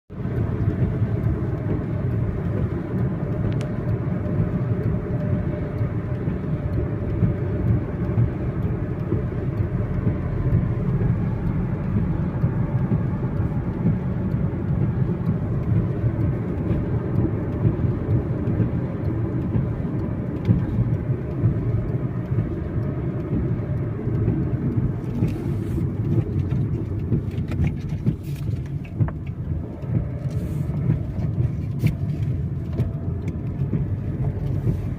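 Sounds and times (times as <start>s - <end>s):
car road and tyre noise: 0.1s - 34.9s.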